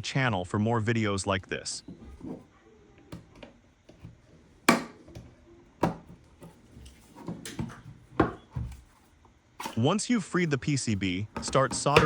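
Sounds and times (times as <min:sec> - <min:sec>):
plastic housing cracking: 0:03.1 - 0:09.8, 0:11.3 - 0:12.0.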